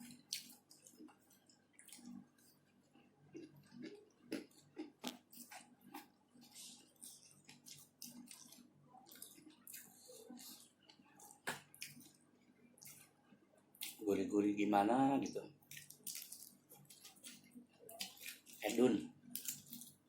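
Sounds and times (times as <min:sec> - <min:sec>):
wet mouth smacks chewing: 0:00.0 - 0:02.6
crunchy clicks of chewing: 0:00.0 - 0:13.2, 0:13.8 - 0:14.0, 0:15.6 - 0:20.0.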